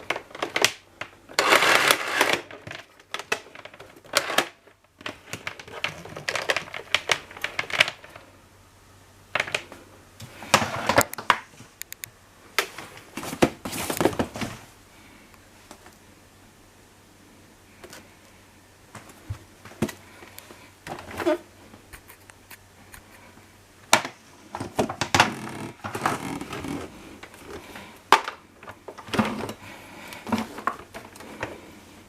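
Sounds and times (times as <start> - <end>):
plastic rustling: 0.0 - 8.4, 12.6 - 14.8, 23.9 - 32.0.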